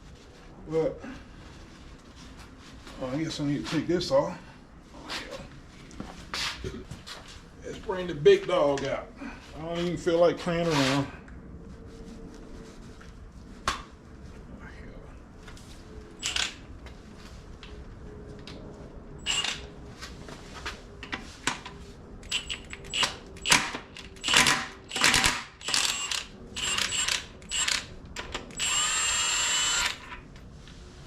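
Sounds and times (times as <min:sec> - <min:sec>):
impact wrench bursts: 0:19.2 - 0:19.7, 0:22.2 - 0:27.9, 0:28.5 - 0:30.2.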